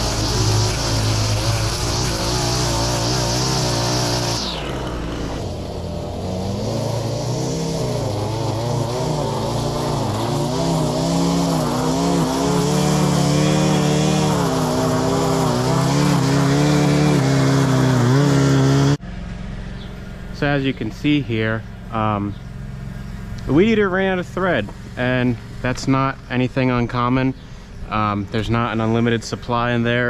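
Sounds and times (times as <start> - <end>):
string trimmer engine running: 0.0 - 20.6.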